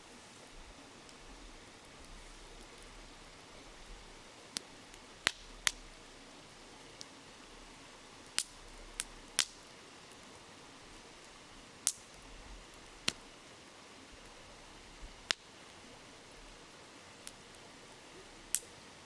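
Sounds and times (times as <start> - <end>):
campfire crackling and popping: 0.0 - 19.0
river flowing: 0.0 - 19.0.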